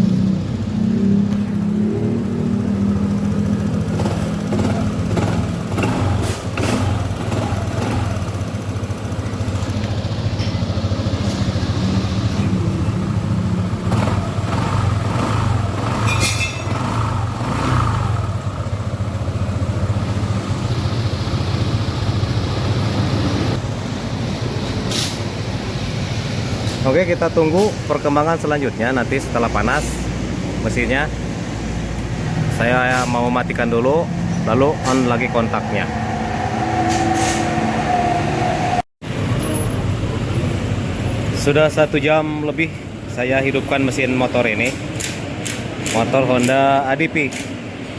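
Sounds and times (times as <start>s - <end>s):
scooter engine idling: 0.0s - 29.4s.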